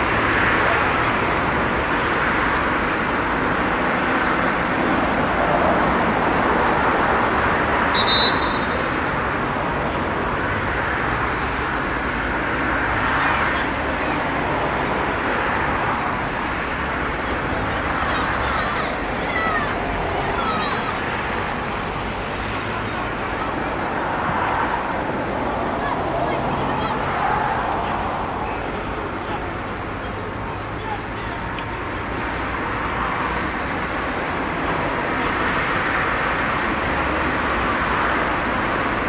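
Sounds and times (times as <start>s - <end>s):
outdoor background noise: 0.0s - 39.0s
referee's whistle blast: 8.0s - 8.9s.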